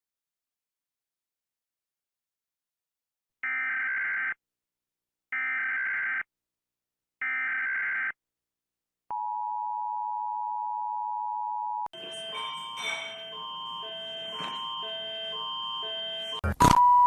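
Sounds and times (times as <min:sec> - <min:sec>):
chiming alert tones: 0:11.9 - 0:16.5
two-tone attention signal: 0:11.9 - 0:17.0.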